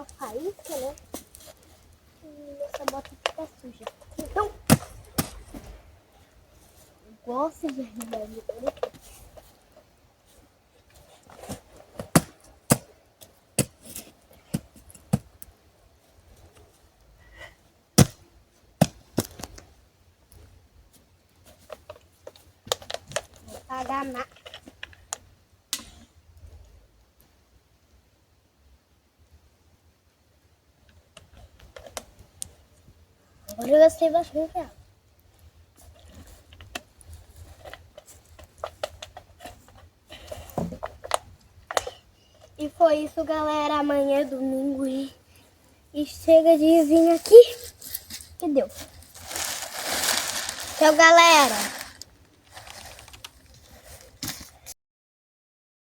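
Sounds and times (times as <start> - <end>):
chopping at doused campfire: 18.0 - 18.2.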